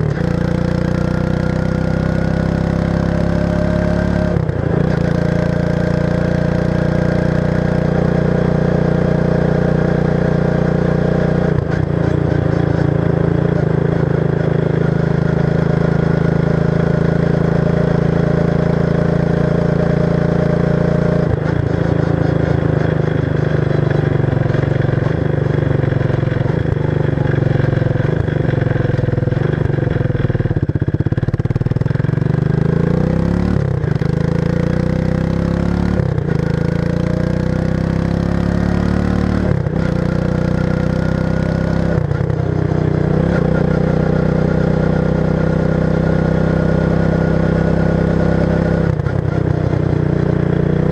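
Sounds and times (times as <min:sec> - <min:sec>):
atv engine running: 0:00.0 - 0:50.9.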